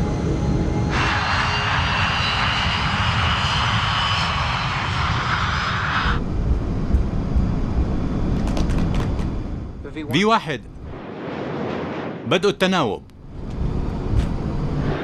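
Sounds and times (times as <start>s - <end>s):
jet engines roaring with whine: 0.0s - 15.0s
low engine rumble: 6.2s - 11.0s.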